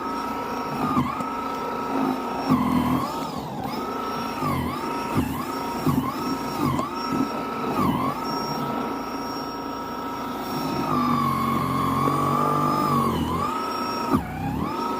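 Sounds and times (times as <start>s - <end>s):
snow blower motor whine: 0.0s - 14.9s.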